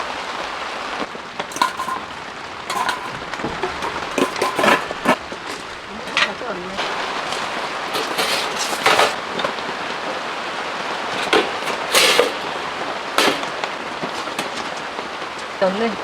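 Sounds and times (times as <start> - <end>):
heavy rain on a tent: 0.0 - 1.5, 5.2 - 16.0.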